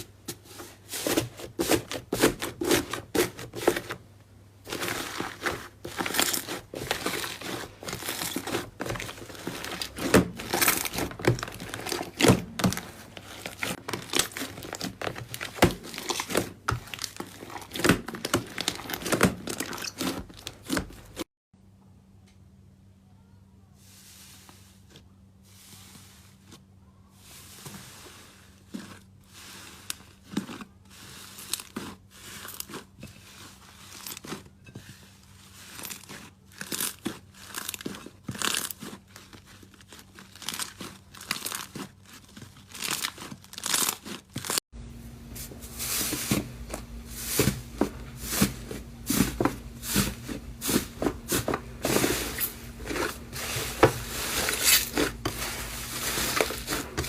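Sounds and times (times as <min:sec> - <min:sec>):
slime crackling and popping: 0:35.7 - 0:44.6.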